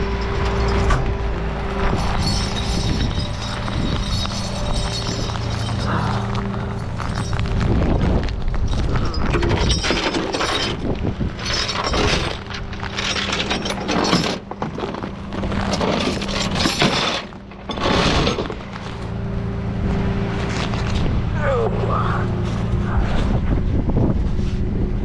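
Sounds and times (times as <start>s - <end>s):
steel chains rattling and clanking: 0.0s - 8.0s, 8.6s - 19.0s
truck engine idling: 0.0s - 8.0s.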